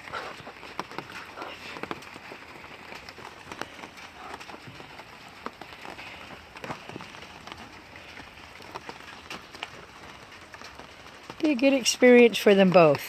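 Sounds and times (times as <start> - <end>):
steady rain falling: 0.0 - 13.0.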